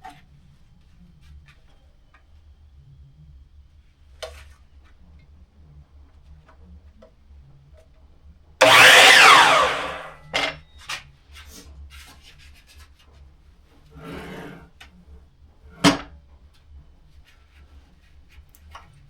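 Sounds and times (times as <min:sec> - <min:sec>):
miter saw winding down: 0:08.6 - 0:10.2.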